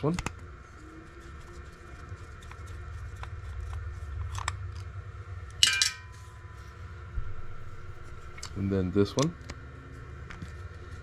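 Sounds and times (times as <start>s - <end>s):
sharp metallic clink: 5.6s - 6.4s.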